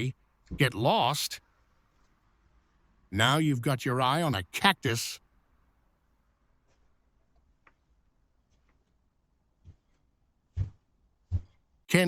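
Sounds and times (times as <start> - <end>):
person speaking: 0.0 - 1.4, 3.1 - 5.2.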